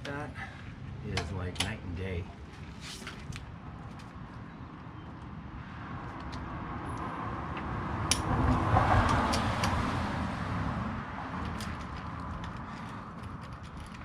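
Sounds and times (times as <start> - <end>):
car passing by: 5.6 - 12.1.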